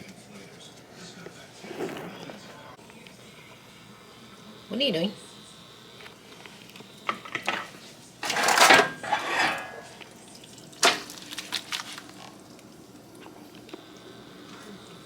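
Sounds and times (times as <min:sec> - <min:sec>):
dishes and cutlery clattering: 0:07.3 - 0:10.0, 0:10.8 - 0:11.2.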